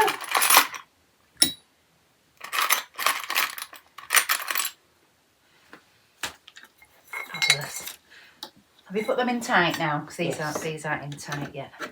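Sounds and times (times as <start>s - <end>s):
small metal pieces clinking: 0.0s - 0.8s, 2.4s - 4.8s, 7.1s - 8.0s.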